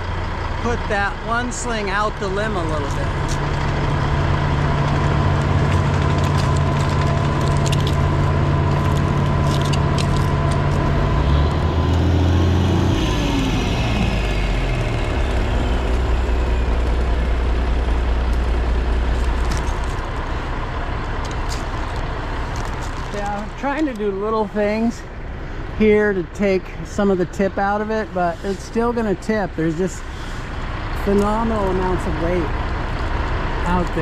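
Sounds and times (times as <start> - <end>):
heavy diesel engine running: 0.0 - 34.0
falling whine: 2.3 - 23.6.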